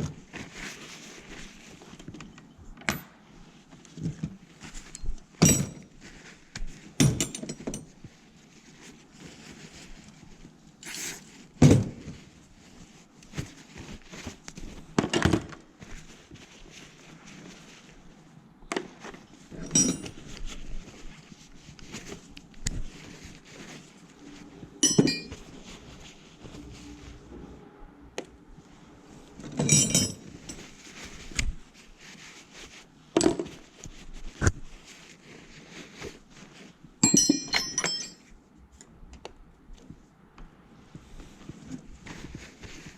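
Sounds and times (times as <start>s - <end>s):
metal hand tools clinking: 24.8s - 25.4s, 37.0s - 38.2s.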